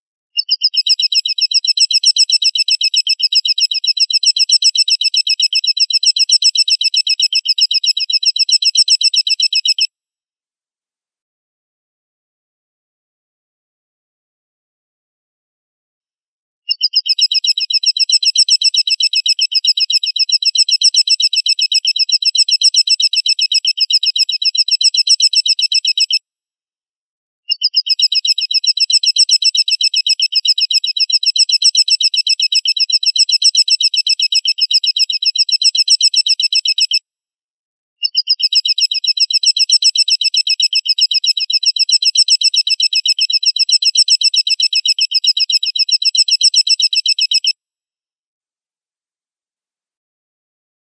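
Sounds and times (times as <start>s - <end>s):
shrill high-pitched bird trill: 0.4s - 9.9s, 16.7s - 26.2s, 27.5s - 37.0s, 38.0s - 47.6s.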